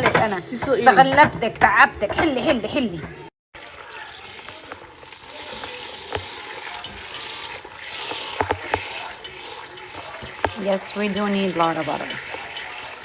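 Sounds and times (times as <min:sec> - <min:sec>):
butter sizzling in a pan: 0:03.6 - 0:13.0
utensil clicking against pan: 0:04.0 - 0:13.0.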